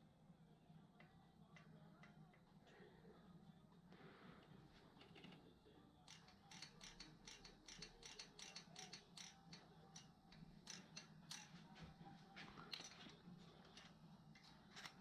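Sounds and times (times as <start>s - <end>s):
faint low hum: 0.0s - 15.0s
faint mechanical clicking: 4.4s - 15.0s.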